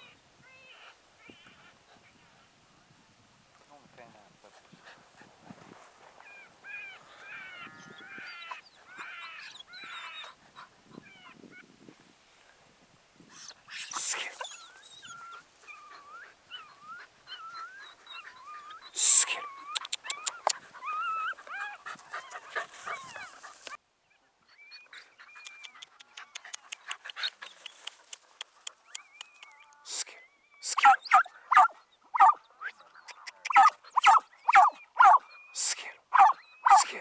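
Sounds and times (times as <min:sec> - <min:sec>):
dog whining and yipping: 0:06.2 - 0:11.4, 0:13.4 - 0:23.8, 0:30.7 - 0:32.4, 0:33.5 - 0:35.3, 0:36.2 - 0:36.9.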